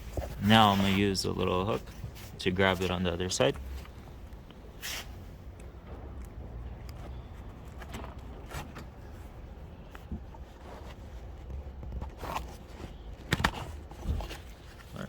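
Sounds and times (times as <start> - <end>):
seat belt scraping and rustling: 0.0 - 5.2, 10.0 - 15.0.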